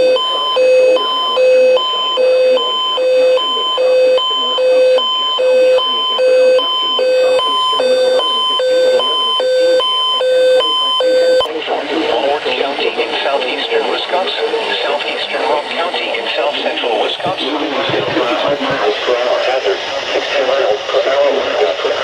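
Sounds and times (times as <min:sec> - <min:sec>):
alternating two-tone alert signal: 0:00.0 - 0:11.5.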